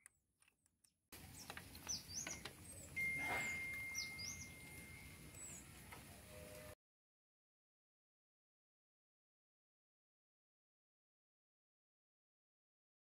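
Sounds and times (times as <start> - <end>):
birds chirping: 1.2 - 6.8
faint outdoor background noise: 1.2 - 6.8
thin steady whistle tone: 3.0 - 5.7.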